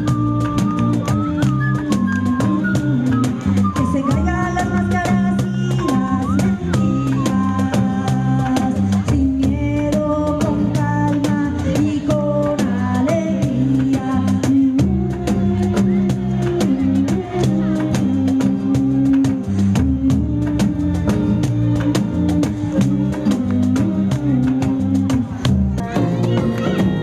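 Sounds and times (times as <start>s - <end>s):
folk music with percussion: 0.0s - 27.0s.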